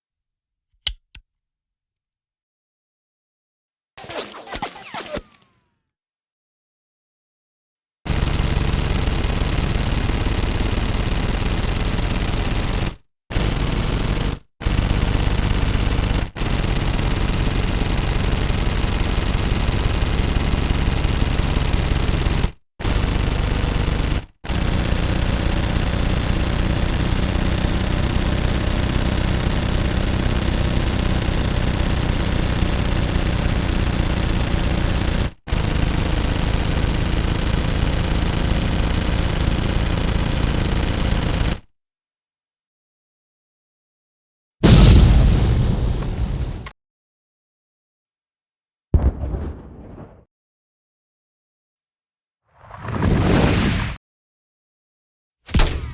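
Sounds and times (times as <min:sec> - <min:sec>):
machine gun firing: 0:04.0 - 0:05.6, 0:08.1 - 0:41.6, 0:44.6 - 0:46.7, 0:49.0 - 0:50.3.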